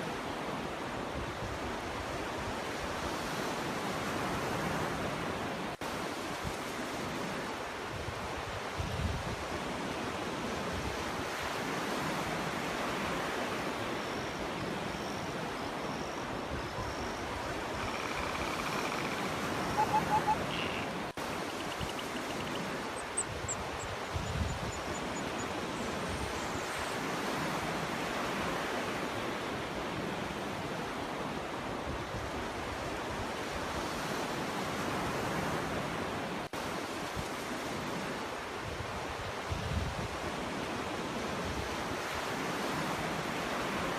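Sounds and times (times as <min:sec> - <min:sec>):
bird chirps: 0:17.8 - 0:26.7.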